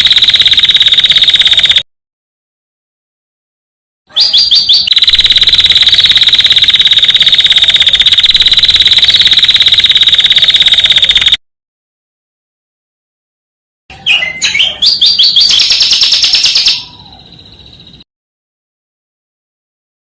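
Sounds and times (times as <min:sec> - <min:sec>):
bird trilling song: 0:04.1 - 0:10.0, 0:13.9 - 0:18.0.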